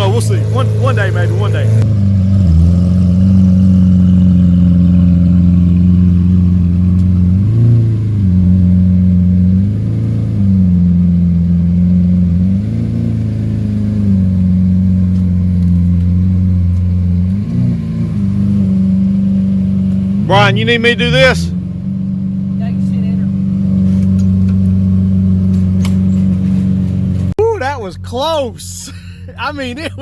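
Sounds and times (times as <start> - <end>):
supercar engine idling: 0.0 - 17.4
engine revving: 0.0 - 27.4.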